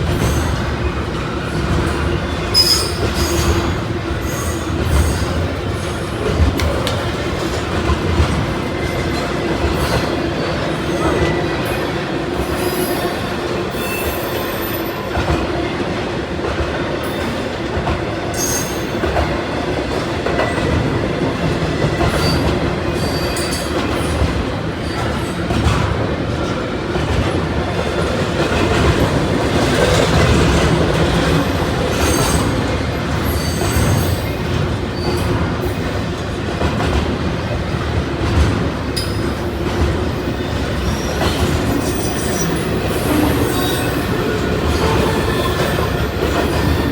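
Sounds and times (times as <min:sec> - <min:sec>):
train wheels rumbling on rails: 0:00.0 - 0:46.9
wheel squeals: 0:01.5 - 0:06.0, 0:40.3 - 0:46.9.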